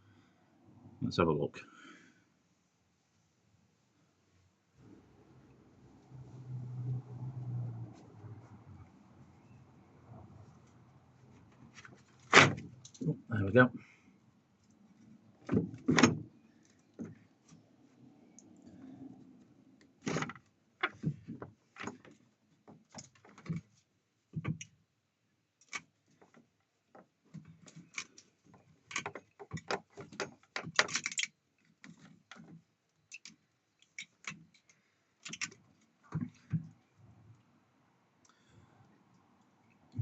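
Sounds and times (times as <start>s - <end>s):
plastic clicks and rattles: 25.6s - 36.8s.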